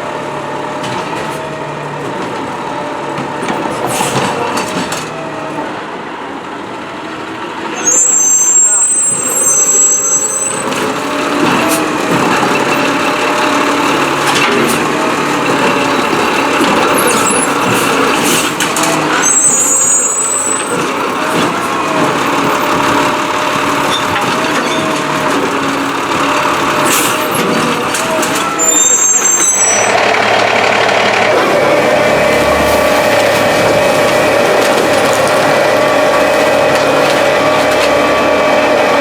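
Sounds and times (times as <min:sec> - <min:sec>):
garbage truck engine running: 0:00.0 - 0:39.0
high squeal: 0:07.8 - 0:11.0, 0:16.9 - 0:18.4, 0:19.0 - 0:21.3, 0:27.0 - 0:30.5.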